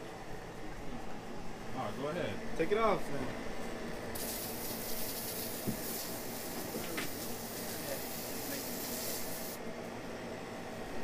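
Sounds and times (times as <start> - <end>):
pressurised spray hissing: 4.2 - 9.6.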